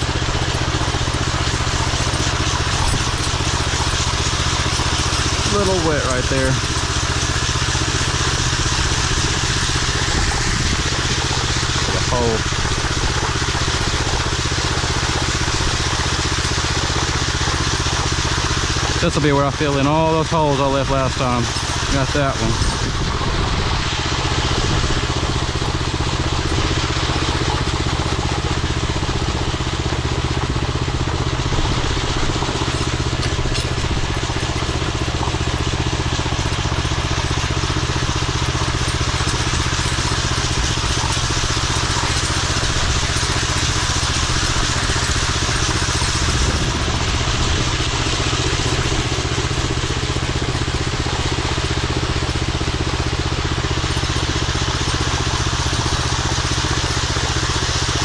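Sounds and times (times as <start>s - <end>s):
power trowel engine running: 0.0s - 58.0s.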